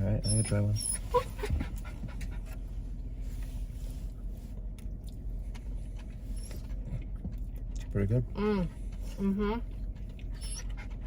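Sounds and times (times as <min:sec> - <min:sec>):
dog panting: 0:00.4 - 0:02.6, 0:10.2 - 0:11.0.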